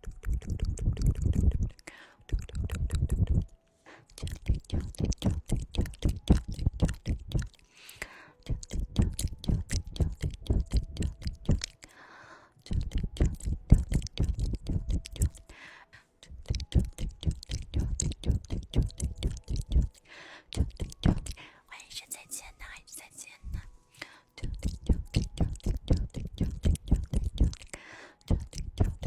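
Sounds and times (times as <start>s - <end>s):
wet tongue clicks and smacks: 0.0s - 11.9s, 12.6s - 15.5s, 16.2s - 21.4s, 24.4s - 29.0s
soft breathy sound: 1.6s - 2.6s, 3.3s - 4.9s, 7.6s - 10.9s, 11.6s - 12.9s, 15.2s - 16.6s, 19.9s - 24.7s, 25.4s - 29.0s.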